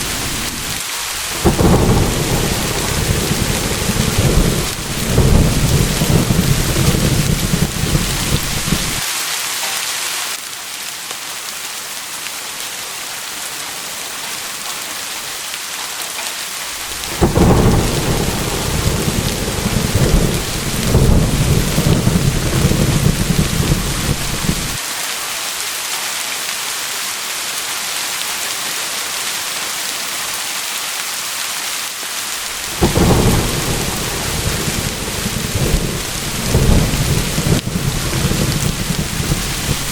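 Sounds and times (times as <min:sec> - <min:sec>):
rolling thunder: 0:00.0 - 0:09.0, 0:16.7 - 0:24.8, 0:32.4 - 0:39.9
steady rain: 0:00.0 - 0:39.9.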